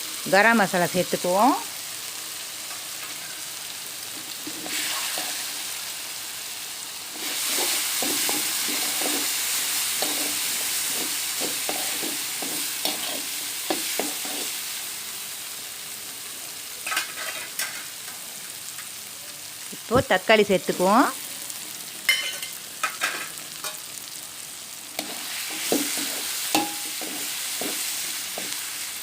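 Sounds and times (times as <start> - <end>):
onions sizzling in oil: 0.0 - 29.0
spoon scraping a pan: 7.2 - 14.6, 16.8 - 17.9, 25.0 - 28.8.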